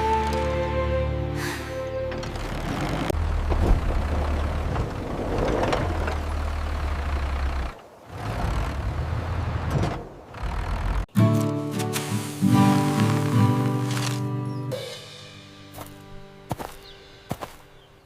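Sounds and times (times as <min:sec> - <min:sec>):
vehicle engine rumbling: 0:01.6 - 0:11.1.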